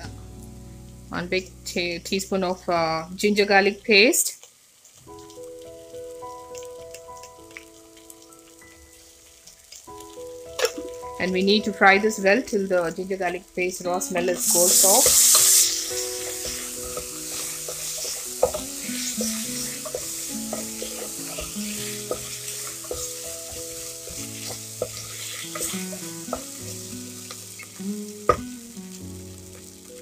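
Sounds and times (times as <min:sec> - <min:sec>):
soft background music: 0:00.0 - 0:03.7, 0:05.0 - 0:30.0
onions sizzling in hot oil: 0:00.0 - 0:30.0
spoon scraping pot: 0:14.2 - 0:26.4.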